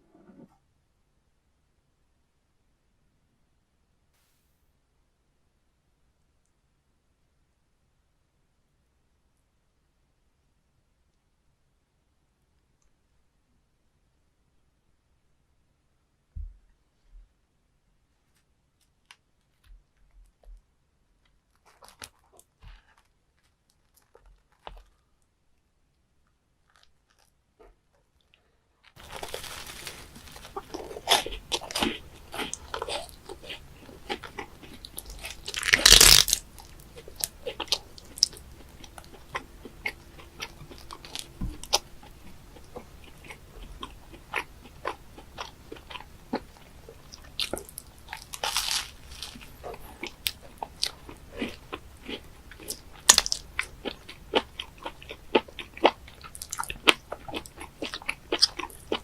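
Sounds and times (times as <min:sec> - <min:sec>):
person chewing wetly: 0:29.0 - 0:59.0.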